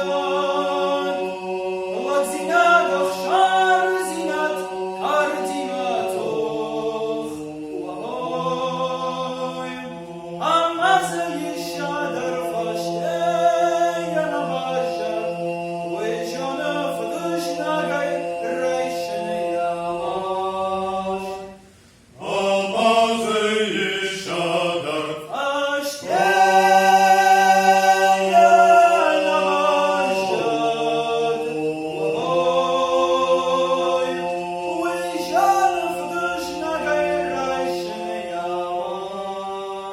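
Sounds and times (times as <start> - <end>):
choir singing a cappella: 0.0 - 39.9.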